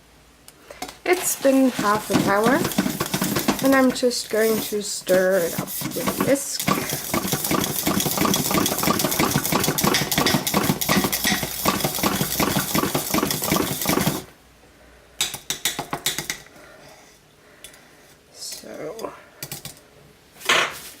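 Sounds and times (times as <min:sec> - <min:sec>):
whisk scraping against pot: 0:00.7 - 0:14.3.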